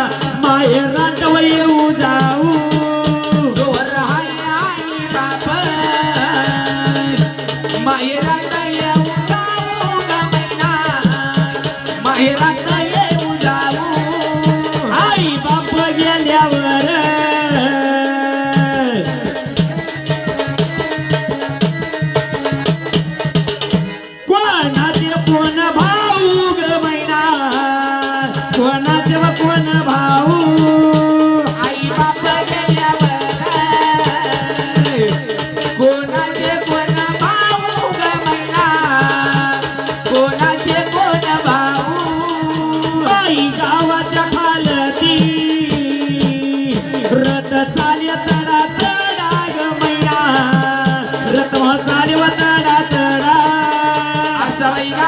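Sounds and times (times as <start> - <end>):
hand drum fast rhythm: 0.0 - 55.0.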